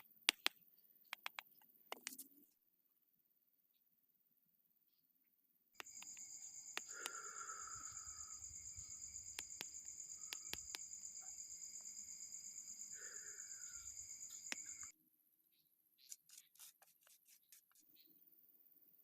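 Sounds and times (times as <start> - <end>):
sharp clicks and taps: 0.0 - 2.3, 5.8 - 7.4, 9.3 - 10.9
crickets trilling: 5.8 - 14.9.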